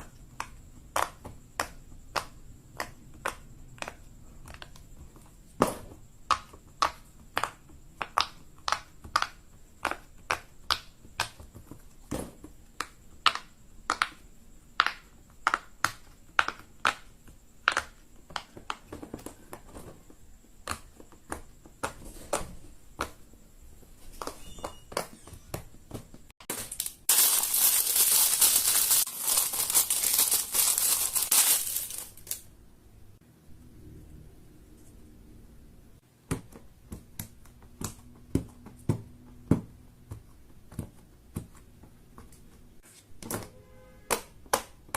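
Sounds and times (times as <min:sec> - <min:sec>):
fidget toys clicking and popping: 0:00.0 - 0:04.9, 0:06.3 - 0:11.7, 0:12.7 - 0:14.2, 0:14.8 - 0:19.3
loud crinkling: 0:26.5 - 0:32.5.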